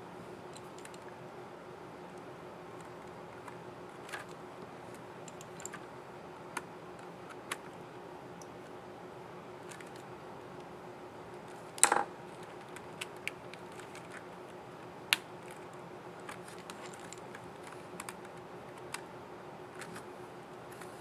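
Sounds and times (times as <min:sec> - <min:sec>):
plastic keyboard clicks: 0:00.6 - 0:01.0, 0:11.8 - 0:14.3.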